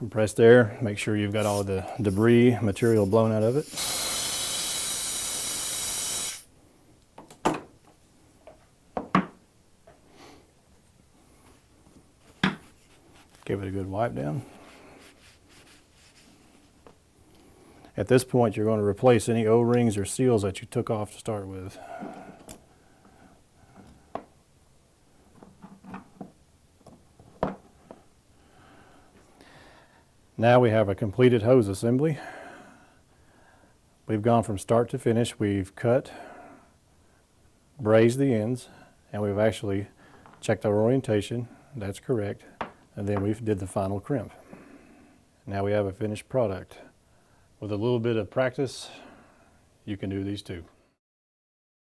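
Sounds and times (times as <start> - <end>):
air blow gun hissing: 1.4 - 6.5.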